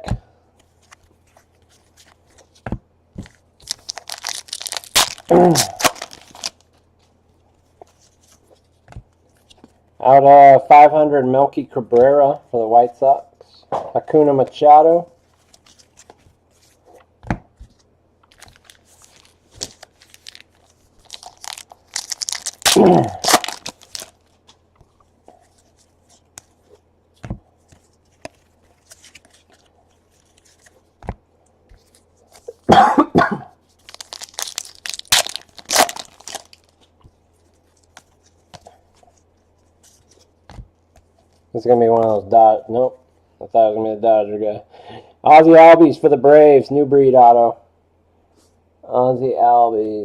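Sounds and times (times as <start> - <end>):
wrappers tearing and crinkling: 3.6 - 6.7, 18.3 - 24.5, 33.7 - 36.9.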